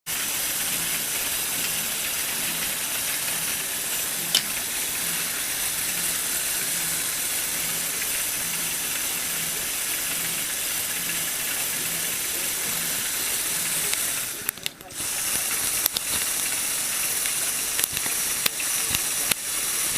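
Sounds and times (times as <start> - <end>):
toy car motor whirring: 0.1 - 19.9
sharp click: 4.3 - 4.6.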